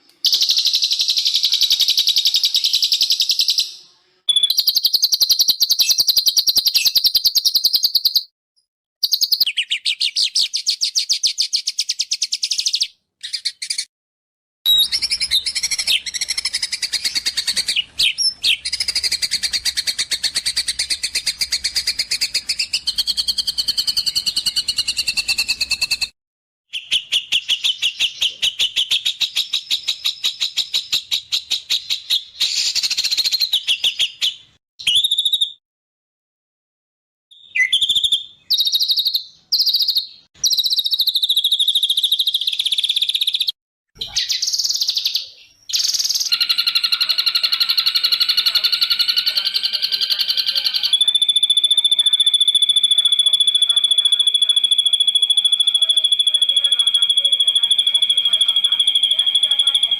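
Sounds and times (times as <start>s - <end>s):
songbirds trilling and chirping: 14.7s - 26.1s, 26.7s - 34.6s, 44.0s - 59.9s.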